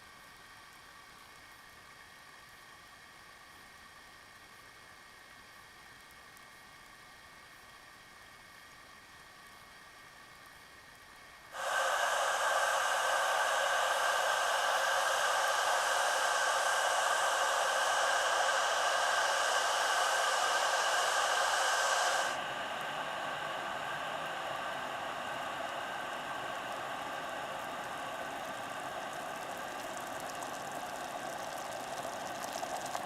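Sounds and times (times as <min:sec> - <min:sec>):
electric kettle heating water: 0:10.9 - 0:33.0.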